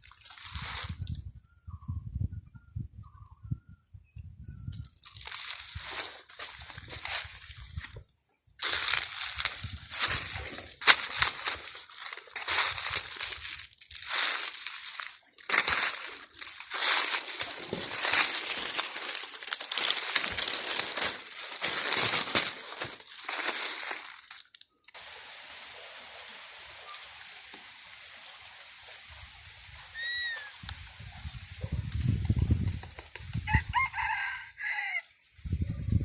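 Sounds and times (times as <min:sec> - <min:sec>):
rustling and crunching: 0:00.0 - 0:01.2, 0:04.8 - 0:25.0
steady hiss: 0:23.4 - 0:31.6.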